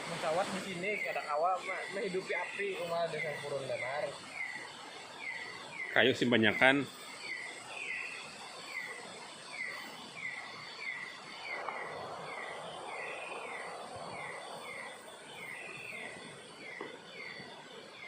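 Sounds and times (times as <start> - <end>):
high insect drone: 0.0 - 18.0
soft rush of noise: 4.1 - 17.8.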